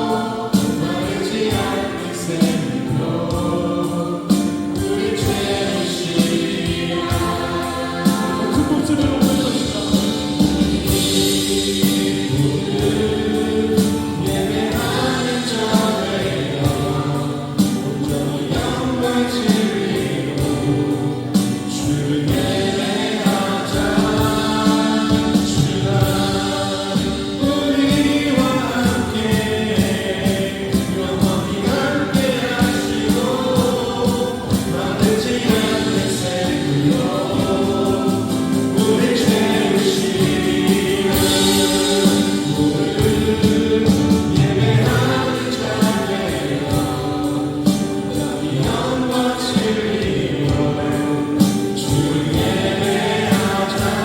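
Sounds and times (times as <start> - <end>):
choir singing a worship song: 0.0 - 54.0
instrumental accompaniment: 0.0 - 54.0.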